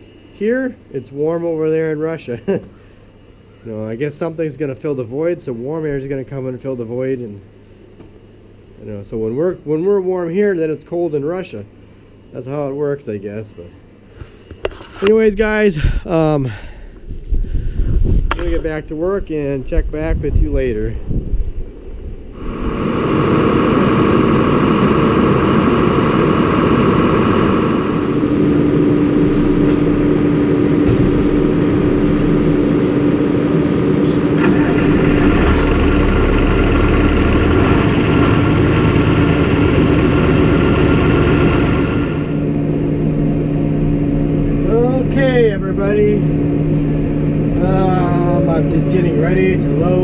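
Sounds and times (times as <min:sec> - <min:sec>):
high whine: 0:00.0 - 0:50.0
tractor engine running: 0:22.4 - 0:50.0.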